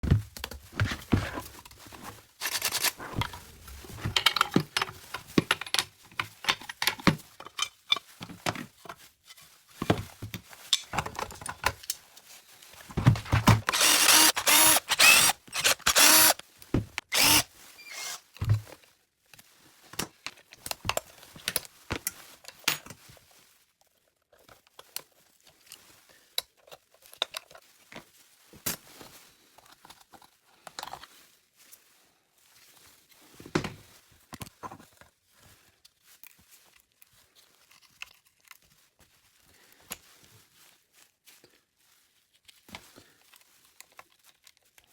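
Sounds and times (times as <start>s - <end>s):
tools and parts clicking and rattling: 0.0s - 8.7s, 9.8s - 12.0s, 12.9s - 18.6s
loud power tool burst: 13.7s - 16.4s, 17.1s - 18.2s.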